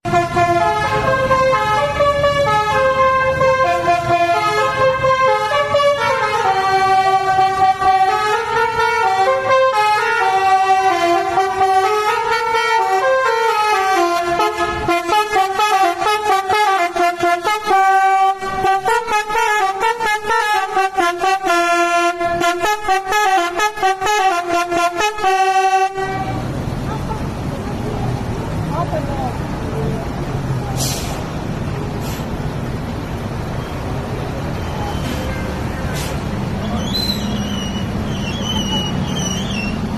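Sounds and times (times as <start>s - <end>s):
musical air horn playing a tune: 0.1s - 26.4s.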